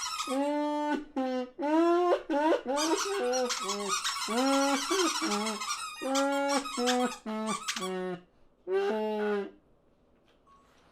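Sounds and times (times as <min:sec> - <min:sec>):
squeaky cartoon bird calls: 0:00.0 - 0:00.6, 0:02.3 - 0:08.1.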